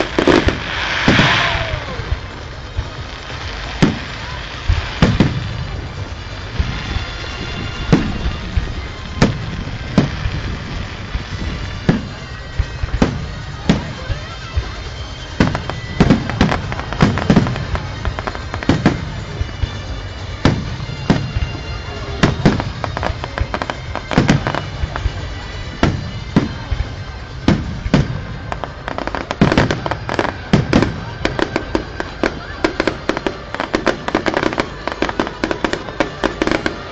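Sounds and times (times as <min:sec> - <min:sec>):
small firework pops: 0:00.0 - 0:07.2, 0:07.8 - 0:26.9
background noise: 0:00.0 - 0:36.9
fireworks exploding: 0:00.0 - 0:36.9.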